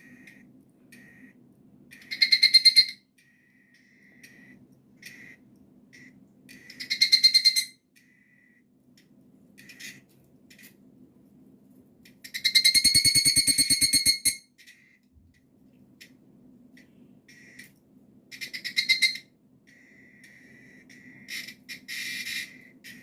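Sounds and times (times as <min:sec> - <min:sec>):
low steady hum: 0:00.0 - 0:23.0
cicada ringing calls: 0:02.0 - 0:03.0, 0:18.3 - 0:22.6
fainter cicada calls: 0:02.0 - 0:03.0, 0:18.3 - 0:23.0.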